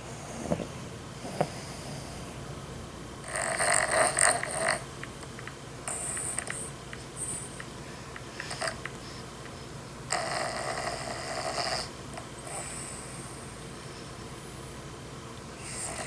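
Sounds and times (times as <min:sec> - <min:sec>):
loud snoring: 0:03.2 - 0:04.9, 0:10.1 - 0:13.1, 0:15.6 - 0:16.0.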